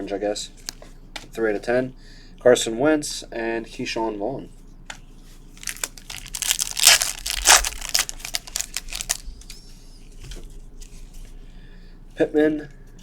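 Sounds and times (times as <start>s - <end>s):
cards rustling and clicking: 5.5s - 9.6s
foil wrapper tearing and crinkling: 5.6s - 9.3s.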